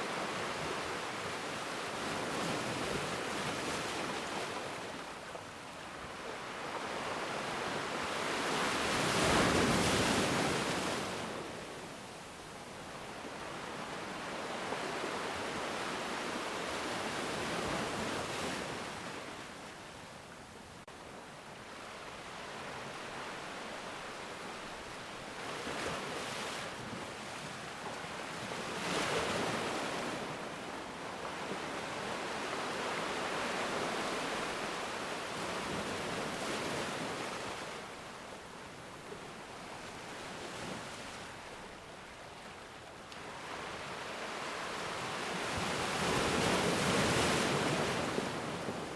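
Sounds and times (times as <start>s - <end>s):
ocean waves breaking: 6.2s - 11.5s, 43.2s - 48.9s.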